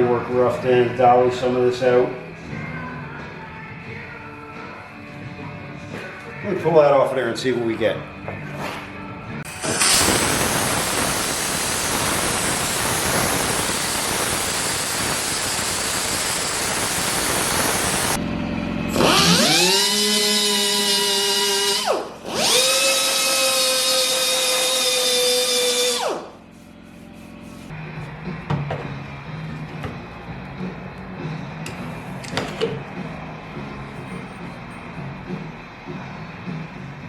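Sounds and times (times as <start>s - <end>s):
power tool motor whining: 9.5s - 26.3s.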